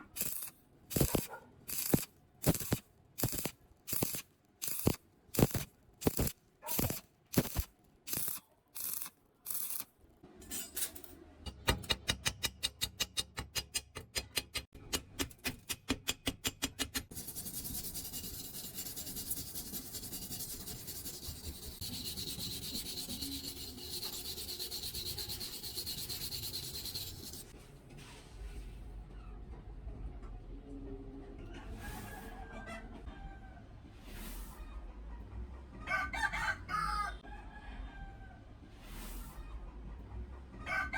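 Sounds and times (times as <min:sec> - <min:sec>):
scraping strokes on metal: 0:00.0 - 0:11.1, 0:17.0 - 0:27.5.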